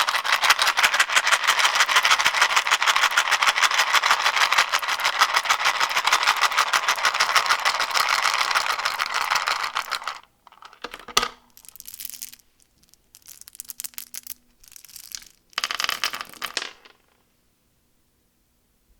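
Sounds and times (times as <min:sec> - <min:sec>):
plastic wrapper crinkling: 0:11.5 - 0:15.6.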